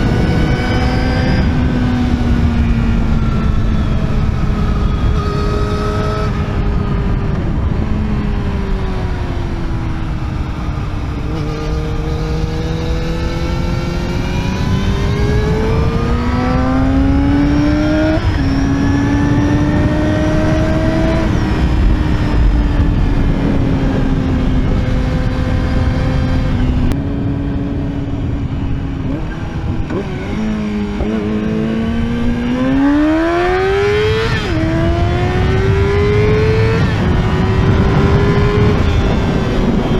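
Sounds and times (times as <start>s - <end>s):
motorcycle engine revving: 0.0s - 39.9s
wind rumble on microphone: 0.0s - 39.9s.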